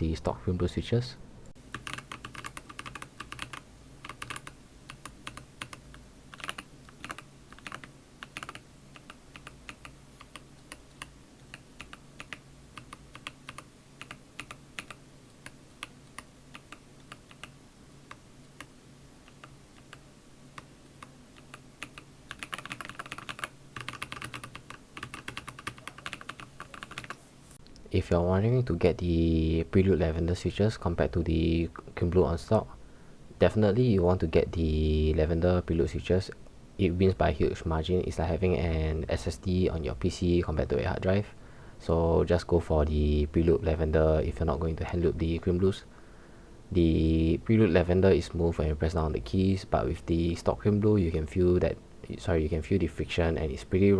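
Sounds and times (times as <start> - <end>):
mechanical keyboard typing: 1.7 - 18.7, 20.6 - 27.2.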